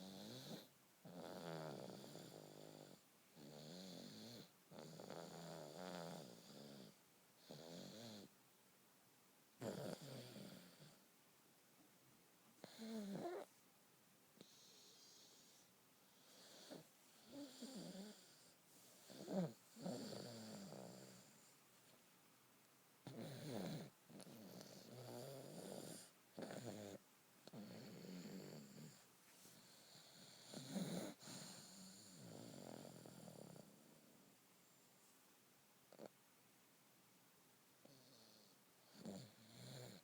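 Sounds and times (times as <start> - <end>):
baby snoring: 0.0 - 8.3, 9.6 - 11.0, 12.6 - 13.5, 14.4 - 21.5, 23.0 - 29.0, 29.6 - 34.1.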